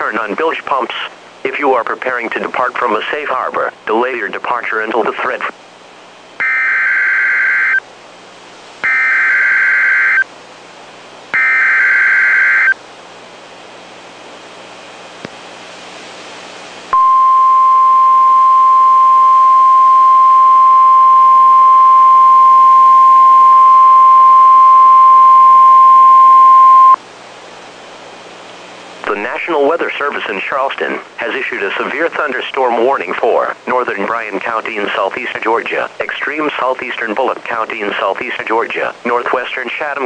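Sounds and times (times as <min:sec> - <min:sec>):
faint radio hiss: 0:00.0 - 0:08.9, 0:26.6 - 0:40.0
steady alarm tone: 0:06.4 - 0:07.8, 0:08.8 - 0:10.3, 0:11.4 - 0:12.8
warbling data bursts: 0:11.4 - 0:12.8.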